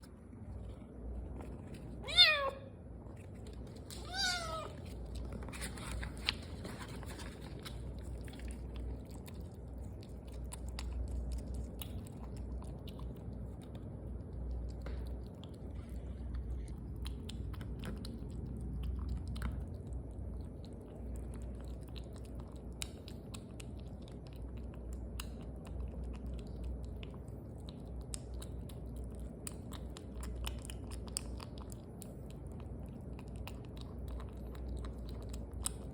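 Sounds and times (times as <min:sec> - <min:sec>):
cat chewing food: 0:00.0 - 0:35.9
cat meowing: 0:02.0 - 0:02.8, 0:04.0 - 0:04.8.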